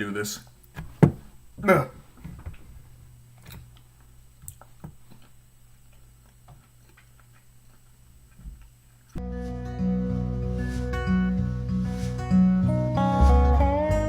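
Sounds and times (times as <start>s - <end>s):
person chewing: 3.8s - 8.7s.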